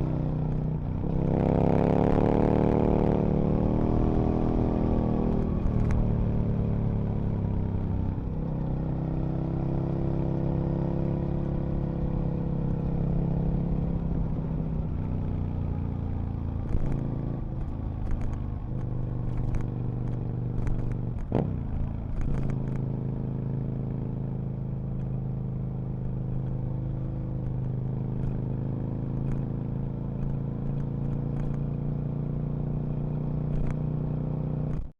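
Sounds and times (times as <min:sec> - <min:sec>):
clicks and clatter: 0:30.2 - 0:31.6.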